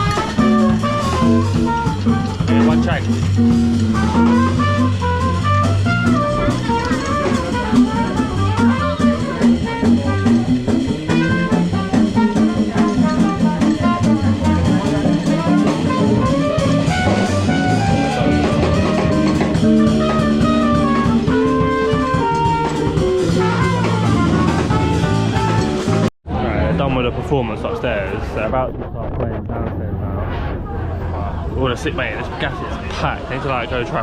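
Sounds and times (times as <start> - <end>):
drum kit beat: 0.0 - 26.1
live band playing: 0.0 - 26.1.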